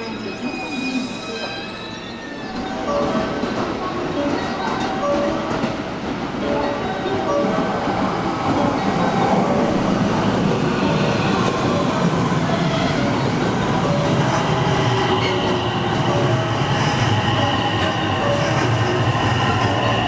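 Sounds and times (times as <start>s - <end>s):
train wheels rumbling on rail: 2.6s - 20.0s.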